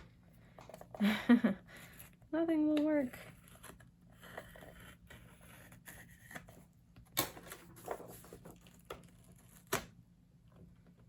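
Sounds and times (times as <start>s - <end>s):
paper rustling and scraping: 7.4s - 9.7s.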